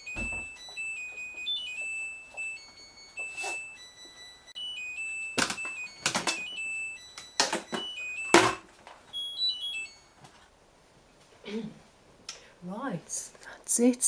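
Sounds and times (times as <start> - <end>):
high beeps: 0.0 - 10.1
washing machine electronic tones: 0.0 - 10.2.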